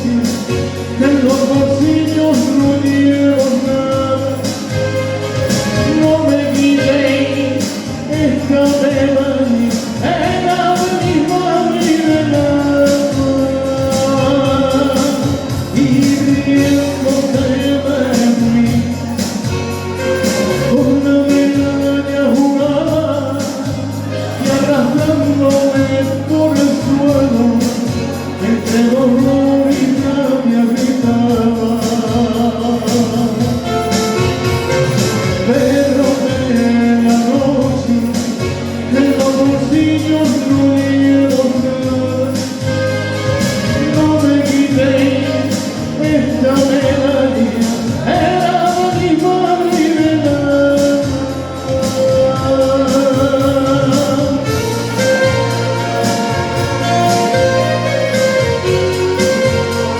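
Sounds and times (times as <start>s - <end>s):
gliding melodic line: 0.0s - 59.9s
live band music: 0.0s - 59.9s.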